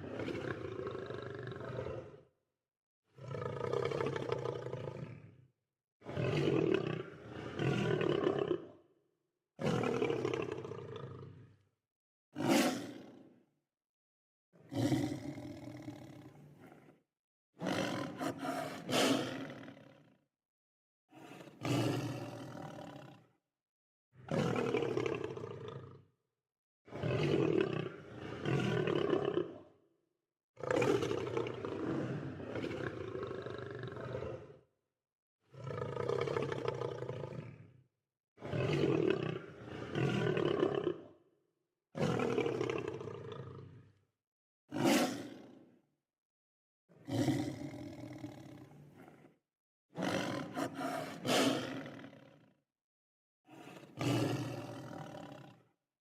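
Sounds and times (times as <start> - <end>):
lion roaring: 3.2 - 5.3, 17.6 - 19.9, 35.5 - 37.6, 44.8 - 45.4, 47.0 - 49.3, 50.0 - 52.3, 53.5 - 55.7.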